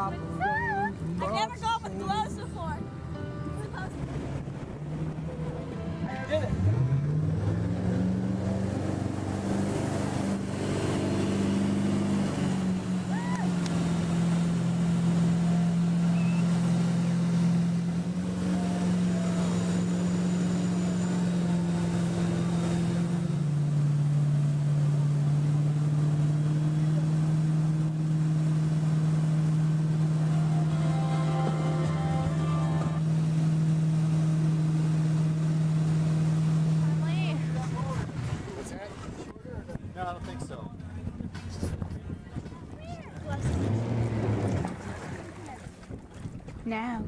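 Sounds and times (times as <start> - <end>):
motorboat engine running: 0.0 - 47.0.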